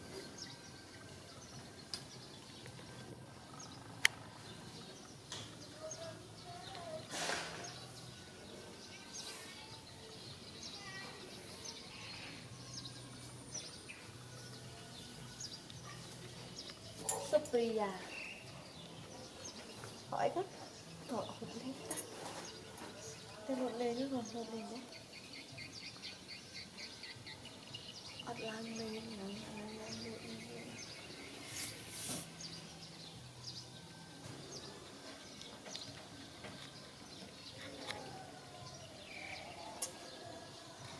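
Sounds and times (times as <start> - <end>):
brief bursts of hiss: 7.1 - 7.8, 31.4 - 32.5.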